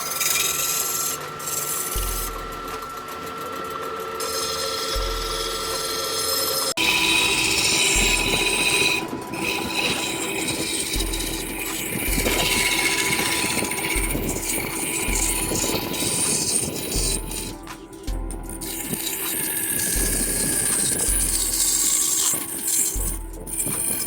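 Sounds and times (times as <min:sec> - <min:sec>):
higher-pitched steady running sound: 0:00.0 - 0:24.0
wood lathe running: 0:00.0 - 0:24.0
electronic music bass notes: 0:06.8 - 0:24.0.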